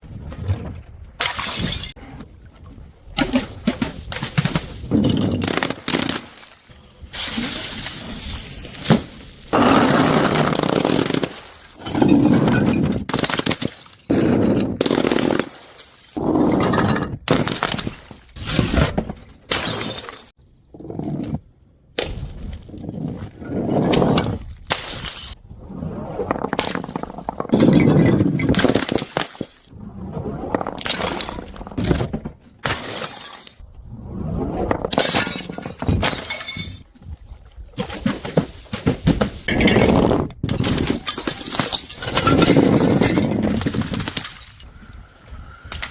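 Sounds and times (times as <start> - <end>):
glass bottles shattering: 1.2 - 2.0, 4.2 - 9.3, 10.6 - 18.4, 19.5 - 20.3, 24.4 - 25.4, 32.6 - 33.6, 34.9 - 36.8, 38.1 - 44.7.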